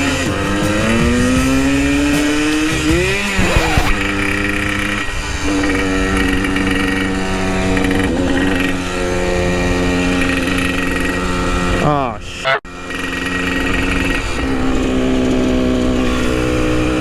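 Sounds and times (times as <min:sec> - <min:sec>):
two-stroke motorcycle engine accelerating: 0:00.0 - 0:11.9, 0:12.7 - 0:17.0.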